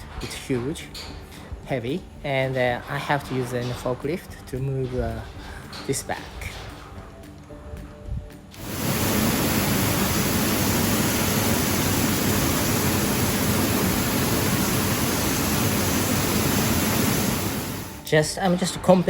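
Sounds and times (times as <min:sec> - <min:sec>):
low machinery hum: 0:08.6 - 0:18.1
machinery rushing noise: 0:08.6 - 0:18.1.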